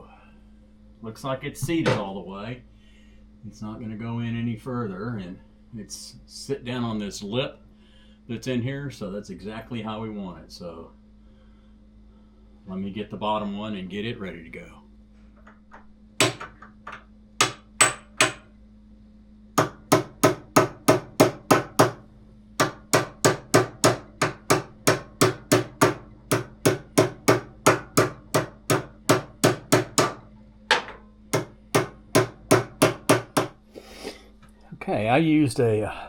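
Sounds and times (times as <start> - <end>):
hammer striking metal: 17.4 - 18.5, 22.6 - 33.6.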